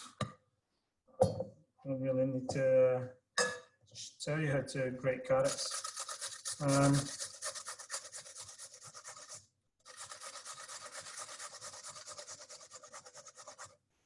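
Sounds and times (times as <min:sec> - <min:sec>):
carrot rasping on metal grater: 0:05.5 - 0:13.7.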